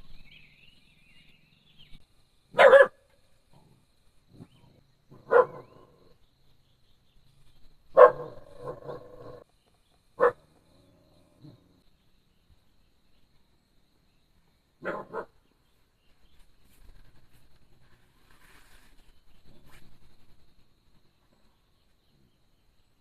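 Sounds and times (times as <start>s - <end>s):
dog barking: 2.5s - 3.0s, 5.1s - 6.0s, 7.9s - 9.4s, 10.2s - 10.5s, 14.8s - 15.4s.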